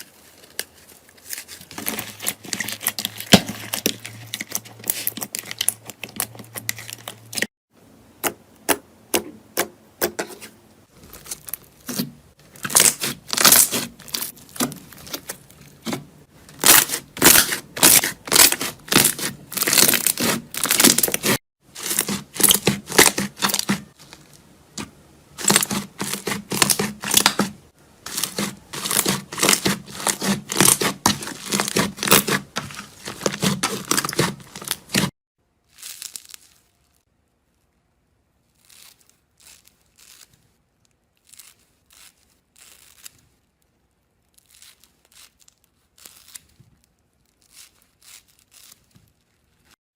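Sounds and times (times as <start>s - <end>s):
slime crackling and popping: 11.2s - 24.0s, 28.1s - 35.1s, 35.7s - 37.0s, 38.5s - 49.7s.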